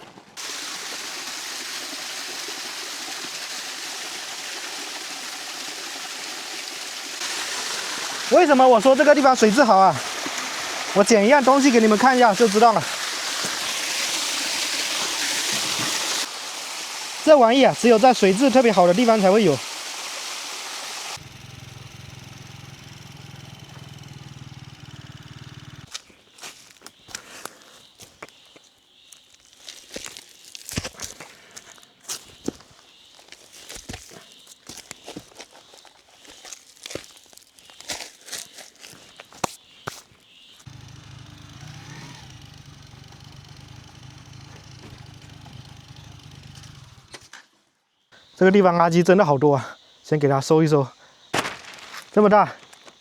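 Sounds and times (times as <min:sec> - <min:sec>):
small engine running: 0:20.6 - 0:26.0, 0:40.6 - 0:47.2.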